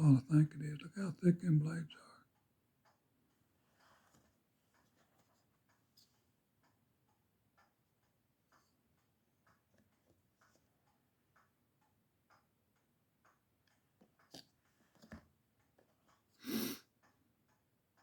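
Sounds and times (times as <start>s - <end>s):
faint ticking: 0.0s - 18.0s.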